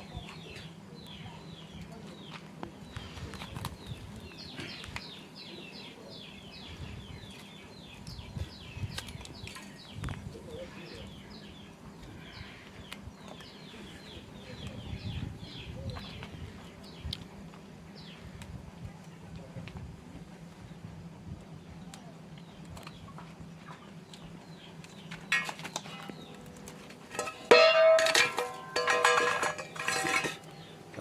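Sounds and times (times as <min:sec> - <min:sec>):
small birds chirping: 0:00.0 - 0:19.0, 0:21.5 - 0:31.0
low steady hum: 0:06.3 - 0:31.0.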